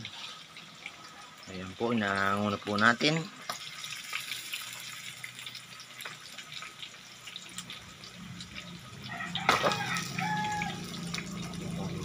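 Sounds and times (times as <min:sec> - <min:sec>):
liquid dripping and crackling: 0:00.0 - 0:12.0.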